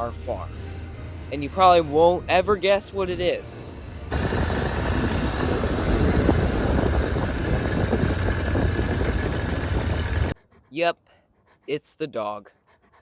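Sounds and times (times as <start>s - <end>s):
farm vehicle engine rumbling: 0.0s - 10.4s.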